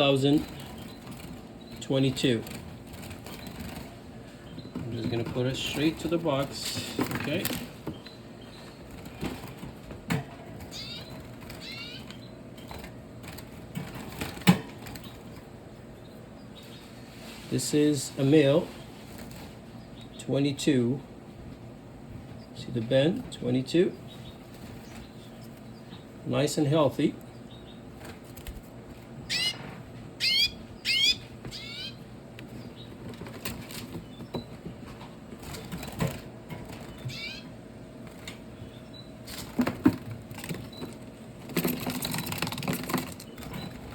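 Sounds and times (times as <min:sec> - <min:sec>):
birds twittering: 0:00.0 - 0:43.9
sharp bird calls: 0:10.6 - 0:12.8, 0:29.1 - 0:33.0, 0:36.8 - 0:37.6
knocks and rattles in box: 0:39.3 - 0:43.9
rustling and clicking: 0:39.3 - 0:43.9.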